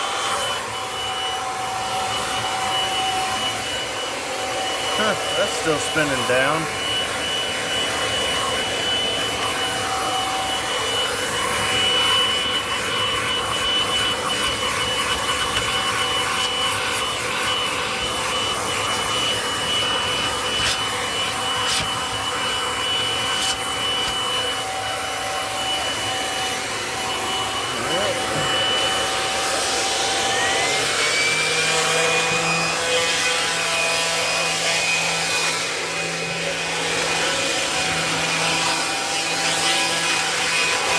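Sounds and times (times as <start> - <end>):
vacuum motor whining: 0.0 - 40.9
brush scrubbing carpet: 12.8 - 24.4.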